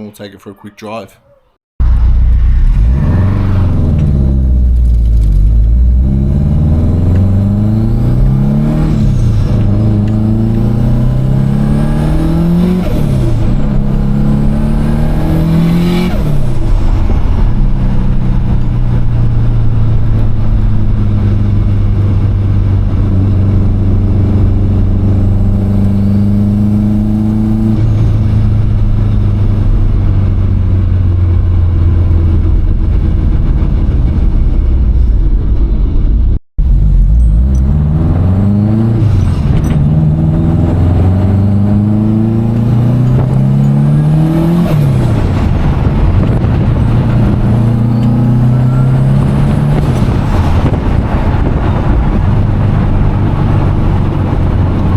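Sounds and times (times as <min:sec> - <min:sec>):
car engine accelerating through gears: 0:01.8 - 0:54.9
turbo whistle: 0:47.9 - 0:49.3.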